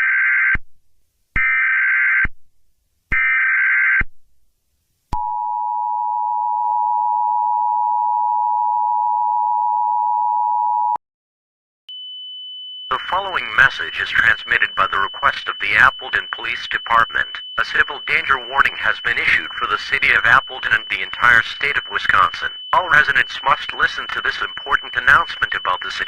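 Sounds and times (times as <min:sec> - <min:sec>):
faint steady high tone: 0:12.9 - 0:26.0
two-tone alert signal: 0:12.9 - 0:26.0.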